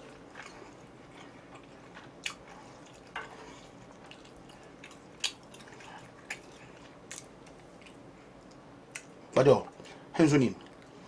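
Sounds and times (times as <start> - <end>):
person eating noodles: 0.0 - 8.0
chewing: 0.0 - 9.9.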